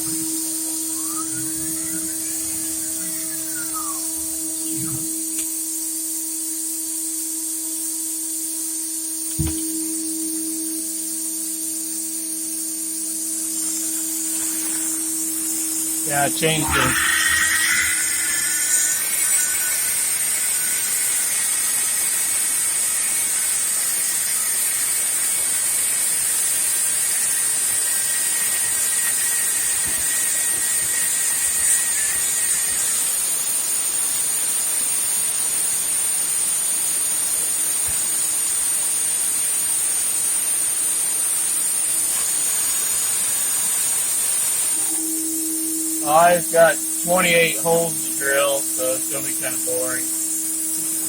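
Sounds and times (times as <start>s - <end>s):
router spindle whining: 0.0s - 5.4s, 13.5s - 33.4s.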